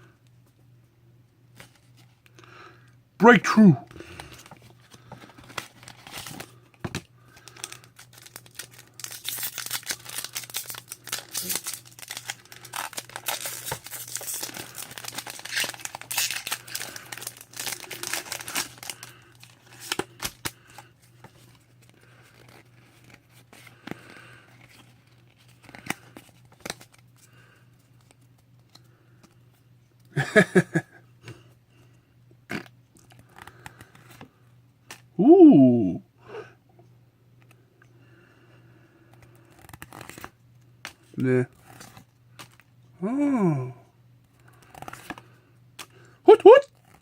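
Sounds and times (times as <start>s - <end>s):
foil wrapper tearing and crinkling: 4.2s - 6.5s, 7.4s - 20.8s, 39.4s - 40.3s
brief vocal sound: 35.2s - 36.0s, 43.0s - 43.8s.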